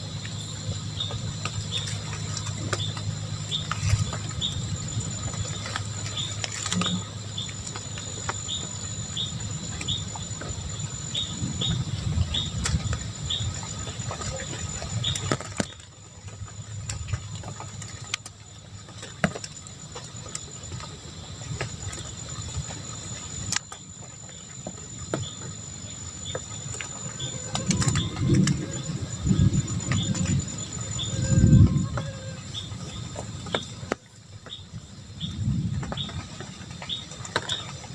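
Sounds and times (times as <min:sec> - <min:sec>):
high insect drone: 0:00.0 - 0:37.9
low rumble: 0:27.0 - 0:37.2.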